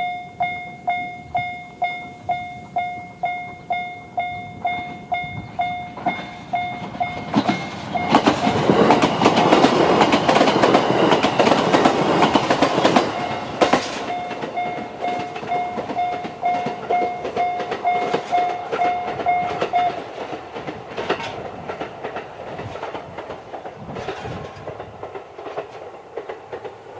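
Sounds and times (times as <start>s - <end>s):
level crossing electronic alarm: 0.0s - 9.6s, 12.9s - 20.0s
train wheels clacking: 0.0s - 26.9s.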